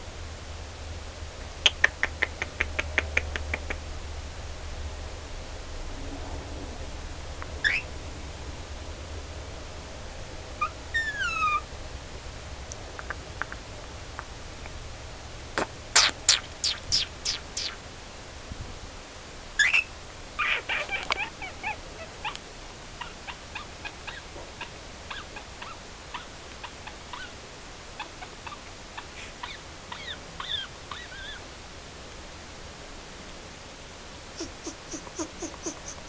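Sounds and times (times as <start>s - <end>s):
pet bird chirping: 7.6s - 7.9s, 10.6s - 11.6s, 16.0s - 17.8s, 19.6s - 21.8s, 23.0s - 27.3s, 29.4s - 31.4s, 34.4s - 36.0s.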